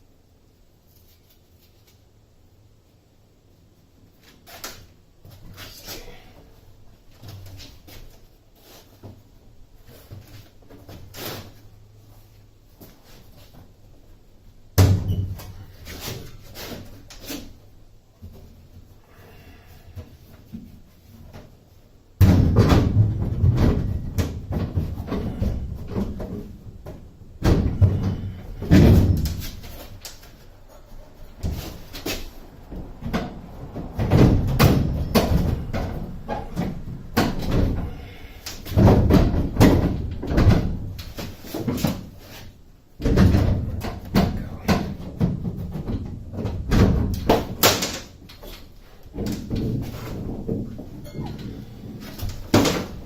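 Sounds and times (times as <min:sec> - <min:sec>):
metal banging and knocking: 0:30.7 - 0:42.1, 0:43.0 - 0:53.0.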